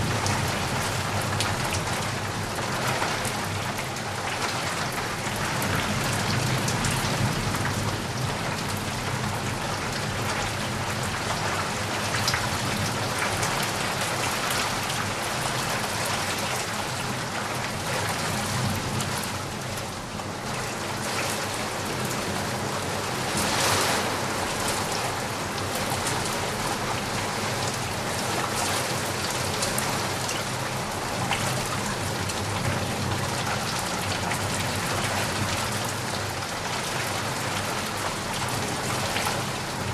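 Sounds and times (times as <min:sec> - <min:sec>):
steady rain: 0:00.0 - 0:39.9
splash: 0:23.1 - 0:25.2.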